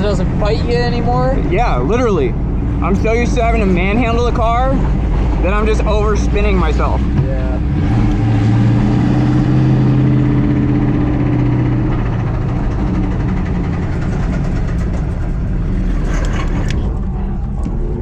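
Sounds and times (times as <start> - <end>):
car engine droning: 0.0 - 18.0.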